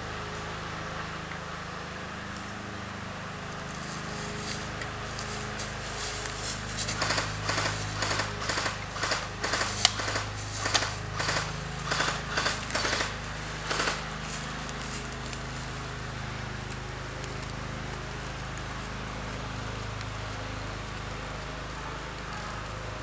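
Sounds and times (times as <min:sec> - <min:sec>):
steady low hum: 0:00.0 - 0:23.0
footsteps walking: 0:03.6 - 0:21.1
sharp snaps: 0:05.2 - 0:15.4.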